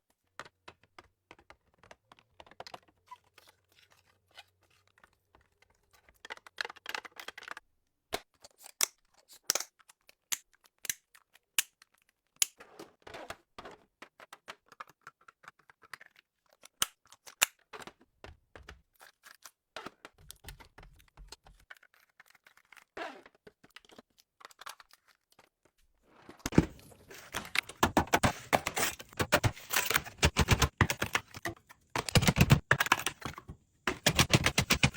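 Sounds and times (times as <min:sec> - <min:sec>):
items set down clicking: 0:26.3 - 0:34.9.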